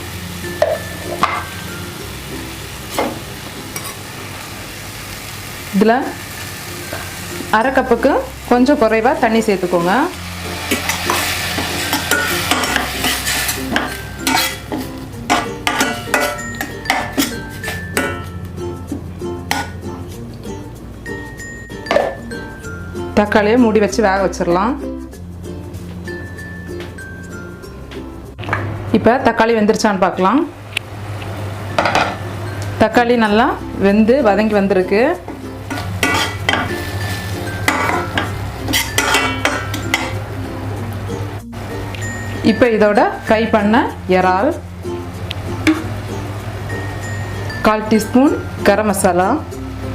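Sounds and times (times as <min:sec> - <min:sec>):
masala sizzling: 0:00.0 - 0:24.0, 0:28.4 - 0:49.9
spoon scraping a pan: 0:10.5 - 0:18.3, 0:35.3 - 0:40.2.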